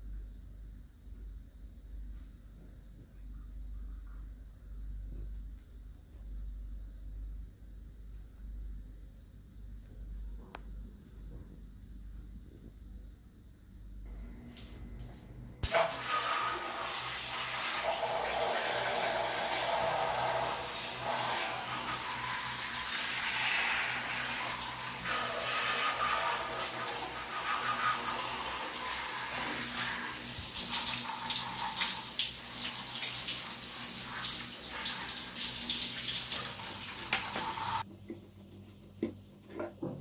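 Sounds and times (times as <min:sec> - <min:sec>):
water running from a tap: 0:15.6 - 0:37.9
objects knocking and clattering: 0:39.0 - 0:40.0.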